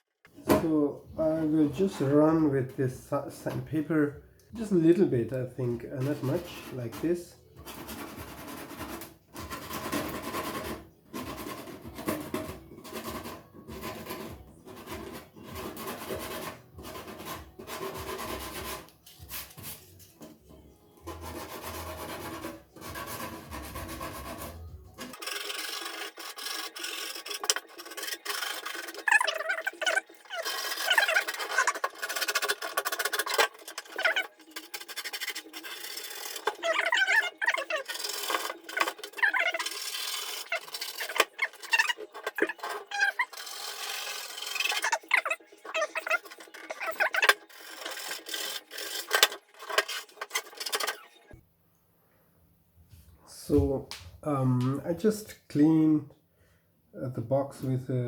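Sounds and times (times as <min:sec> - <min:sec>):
sandpaper rubbing on plastic: 0:05.6 - 0:20.2, 0:21.0 - 0:51.1.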